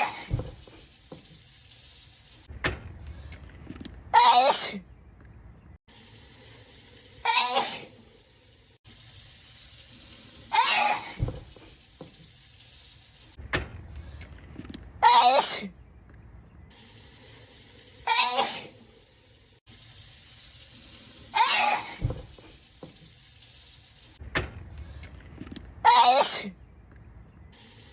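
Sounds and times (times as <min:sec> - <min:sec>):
person sneezing: 0:07.3 - 0:07.9, 0:18.1 - 0:18.8.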